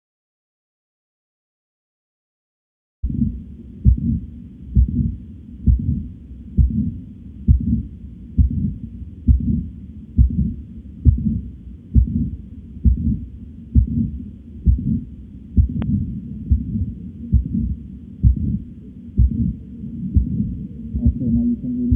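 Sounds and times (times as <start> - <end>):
heartbeat thudding: 3.0 - 21.9.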